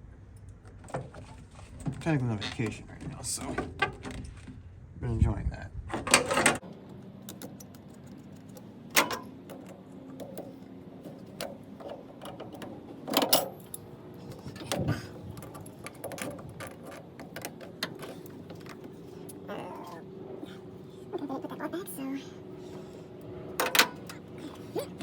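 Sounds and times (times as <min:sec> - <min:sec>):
hand tools clicking and clinking: 0:11.3 - 0:19.4, 0:23.6 - 0:25.0.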